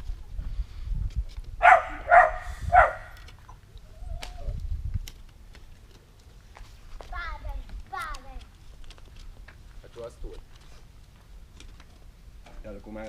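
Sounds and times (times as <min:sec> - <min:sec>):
dog barking: 0:01.6 - 0:03.2.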